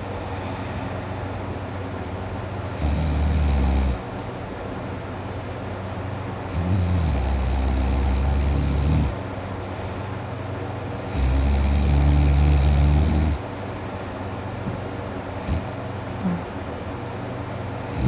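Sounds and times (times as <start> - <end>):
man snoring loudly: 2.8 - 4.0, 6.5 - 9.2, 11.1 - 13.4, 15.4 - 15.7.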